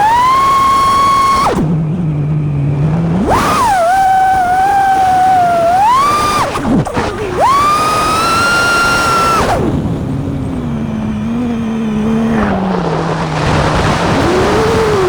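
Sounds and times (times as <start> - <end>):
drone motors whining: 0.0 - 15.0
rushing wind: 0.0 - 15.0.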